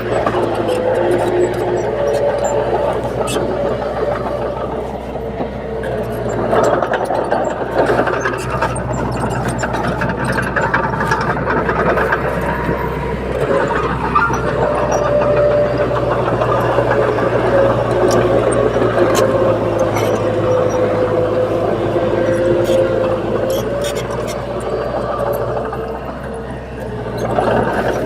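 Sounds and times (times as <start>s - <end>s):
bulldozer diesel engine: 0.0s - 28.0s
steel tracks clanking: 0.0s - 28.0s.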